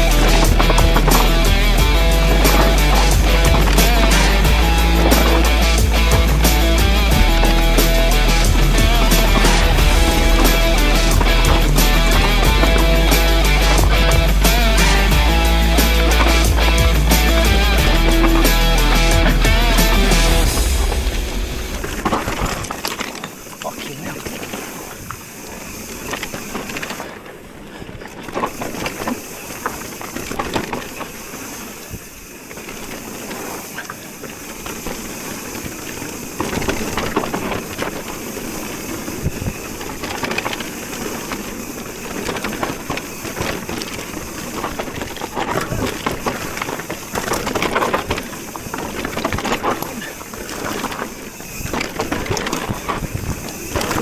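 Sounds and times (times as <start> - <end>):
bike rattling over bumps: 0.0 - 54.0
bike tyres crunching on dirt: 0.0 - 54.0.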